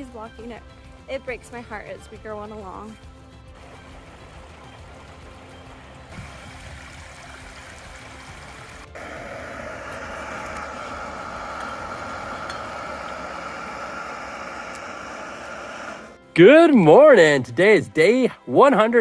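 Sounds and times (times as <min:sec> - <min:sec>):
running water rushing: 0:03.6 - 0:16.2.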